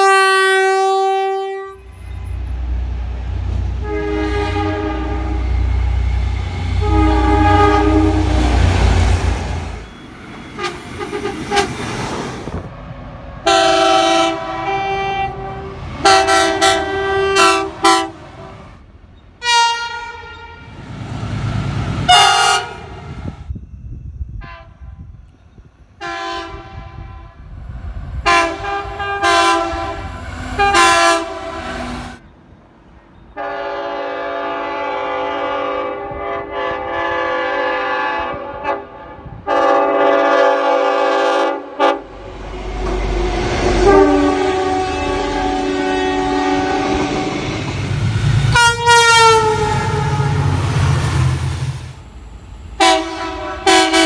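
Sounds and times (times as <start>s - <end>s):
train horn chord blasts: 0.0s - 2.0s, 3.7s - 9.2s, 13.4s - 18.7s, 19.4s - 20.8s, 22.0s - 23.2s, 26.0s - 32.2s, 33.4s - 51.4s, 52.7s - 54.0s
rumble of passing trains: 0.0s - 54.0s.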